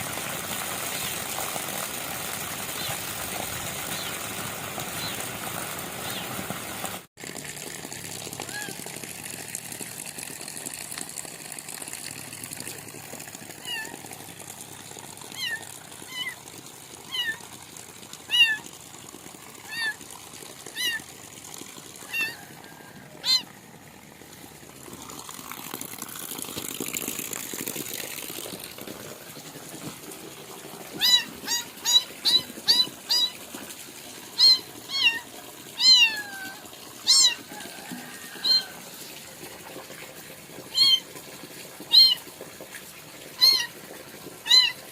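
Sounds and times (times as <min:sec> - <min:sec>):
kitten meowing: 0:13.6 - 0:13.9, 0:15.3 - 0:16.4, 0:17.1 - 0:17.4, 0:18.3 - 0:18.6, 0:19.7 - 0:20.0, 0:20.8 - 0:21.0, 0:22.1 - 0:22.4, 0:23.2 - 0:23.4, 0:31.0 - 0:33.4, 0:34.4 - 0:35.2, 0:35.8 - 0:37.4, 0:38.4 - 0:38.6, 0:40.7 - 0:41.0, 0:41.9 - 0:42.2, 0:43.4 - 0:43.7, 0:44.5 - 0:44.8.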